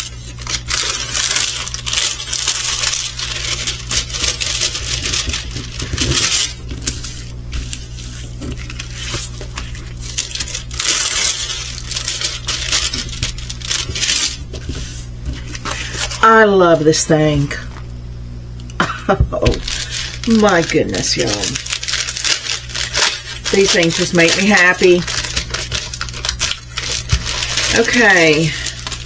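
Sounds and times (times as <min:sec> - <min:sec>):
plastic beads rattling in bags: 0:00.0 - 0:14.4, 0:19.5 - 0:29.0.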